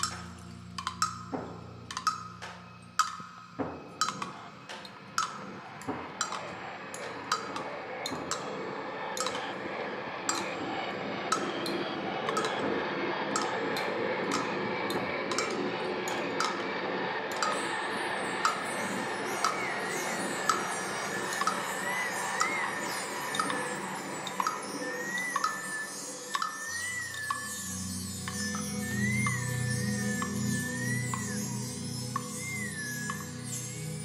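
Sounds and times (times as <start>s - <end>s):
sharp ringing taps and clinks: 0.0s - 9.6s, 17.3s - 34.0s.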